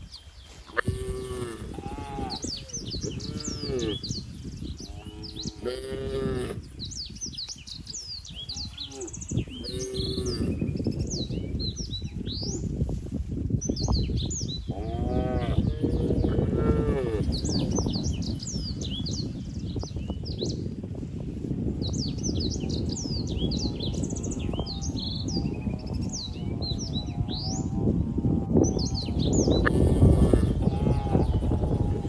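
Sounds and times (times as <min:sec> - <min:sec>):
birds chirping: 0:00.0 - 0:12.8, 0:13.6 - 0:20.8, 0:21.8 - 0:32.0
cows mooing: 0:00.8 - 0:02.5, 0:14.8 - 0:17.3, 0:27.0 - 0:32.0.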